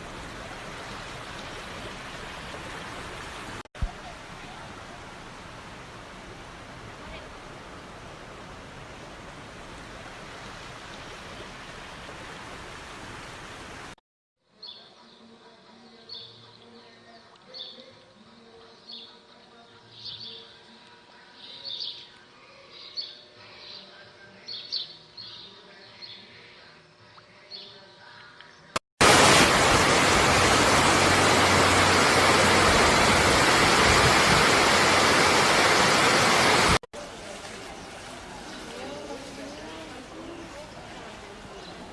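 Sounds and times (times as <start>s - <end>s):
fast-flowing water rushing: 0.0s - 14.0s, 29.0s - 41.9s.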